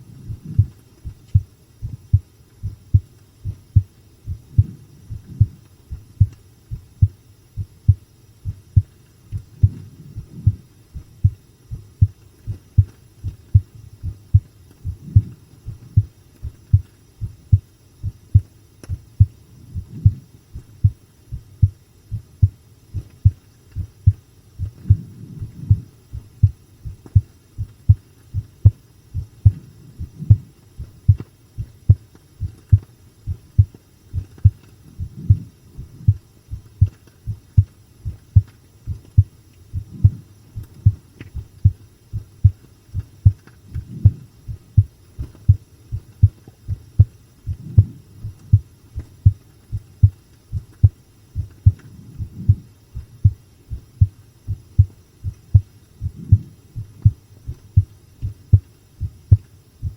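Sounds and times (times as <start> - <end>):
heartbeat thumps: 0.0 - 59.9.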